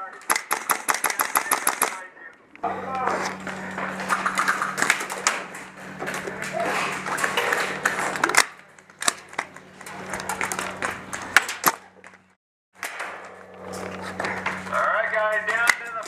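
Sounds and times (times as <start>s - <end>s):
airsoft rifles firing: 0.0s - 2.1s, 4.0s - 5.5s
steady low hum: 0.0s - 16.0s.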